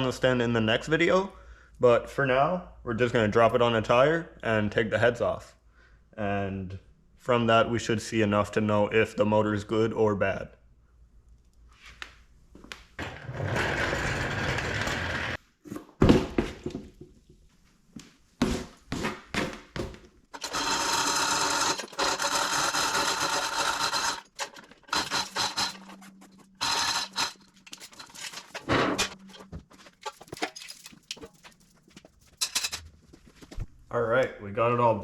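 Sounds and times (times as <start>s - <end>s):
metal clanks and scrapes: 23.0s - 33.0s.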